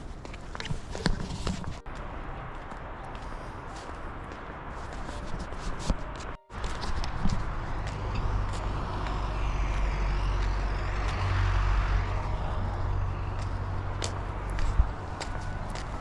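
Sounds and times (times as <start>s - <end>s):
traffic low rumble: 0.0s - 16.0s
vehicle passing: 0.6s - 16.0s.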